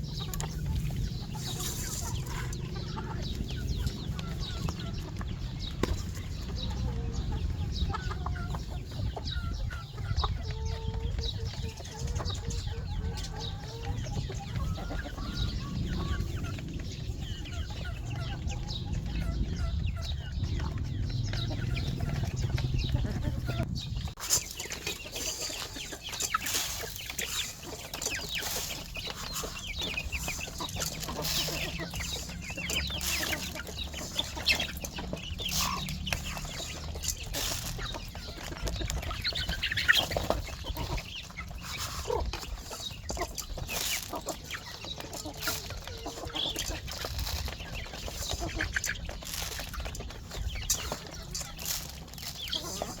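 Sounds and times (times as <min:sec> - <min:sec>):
chickens clucking: 0:00.0 - 0:53.0
low rumble: 0:14.6 - 0:24.2.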